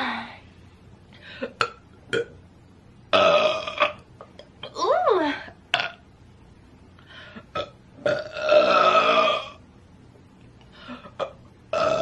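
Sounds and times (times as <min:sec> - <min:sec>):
girl burping: 0:01.4 - 0:02.3, 0:03.2 - 0:04.0, 0:07.5 - 0:09.6, 0:11.0 - 0:12.0.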